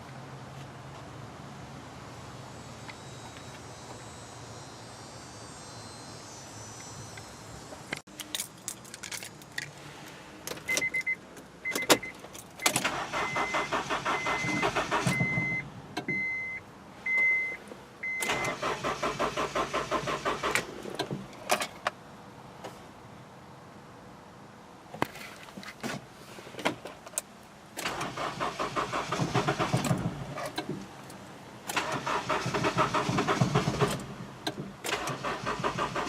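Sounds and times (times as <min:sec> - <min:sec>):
car engine cranking: 0:11.7 - 0:15.7, 0:18.1 - 0:21.8, 0:27.7 - 0:36.0.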